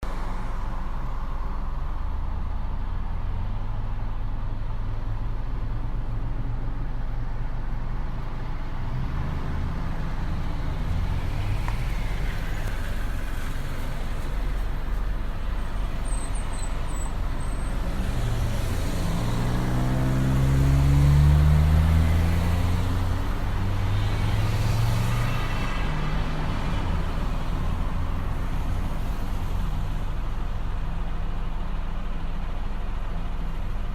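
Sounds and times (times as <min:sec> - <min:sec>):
street traffic rumble: 0:00.0 - 0:33.9
vehicle engine passing close: 0:08.9 - 0:29.6.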